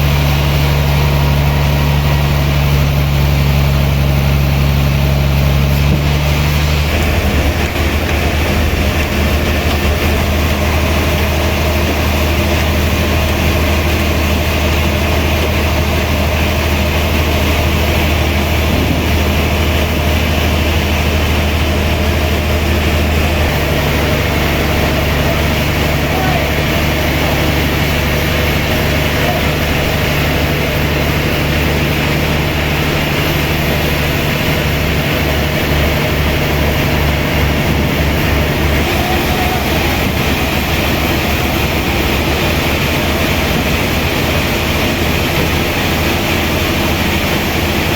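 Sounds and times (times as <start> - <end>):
sawmill machinery droning: 0.0 - 47.9.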